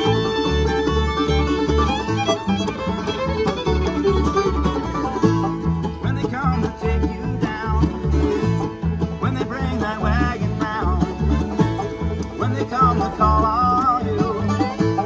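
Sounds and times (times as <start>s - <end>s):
banjo: 0.0s - 15.0s
bass notes: 0.0s - 15.0s
guitar: 0.0s - 15.0s
sliding lead line: 0.0s - 15.0s.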